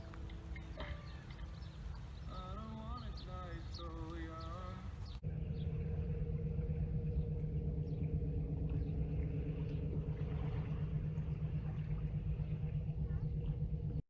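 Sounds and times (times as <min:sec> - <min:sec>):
birds chirping: 0:00.5 - 0:14.0
low engine hum: 0:05.2 - 0:14.0.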